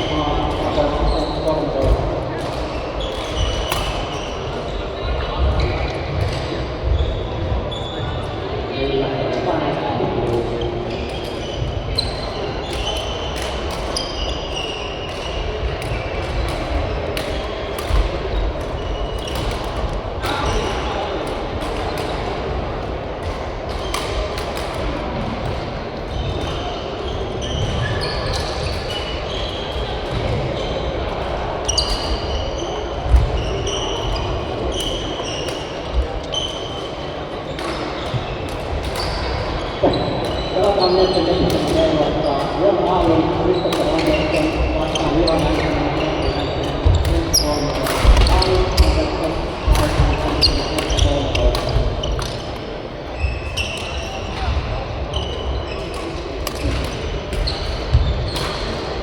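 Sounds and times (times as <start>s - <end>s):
shoes squeaking on floor: 0.0s - 8.5s, 9.5s - 21.0s, 26.1s - 31.0s, 31.6s - 59.0s
murmur of voices: 0.0s - 59.0s
rackets hitting shuttlecock: 37.6s - 42.0s, 46.6s - 52.6s, 55.9s - 58.9s.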